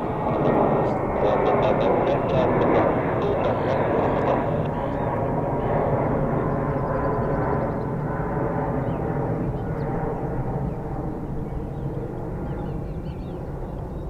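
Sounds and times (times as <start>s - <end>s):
jet airliner engine rumble: 0.0s - 14.0s.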